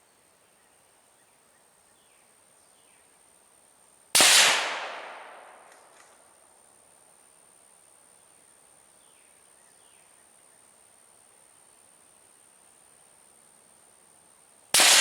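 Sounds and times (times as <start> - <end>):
rifle shot echoing: 4.2 - 6.0, 14.8 - 15.0.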